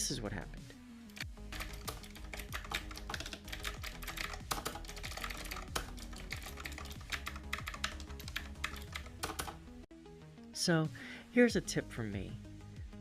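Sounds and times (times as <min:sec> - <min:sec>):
mechanical keyboard typing: 0:01.5 - 0:09.6.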